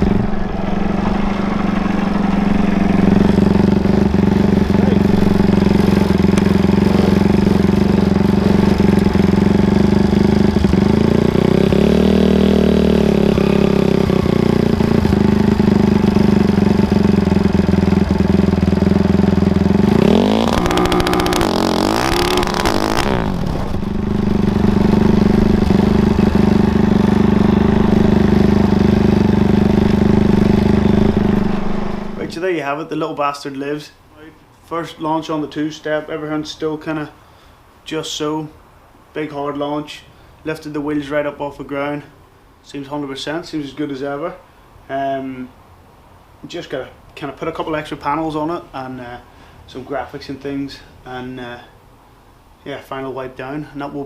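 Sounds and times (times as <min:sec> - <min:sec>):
lawn mower engine revving: 0:00.0 - 0:32.4.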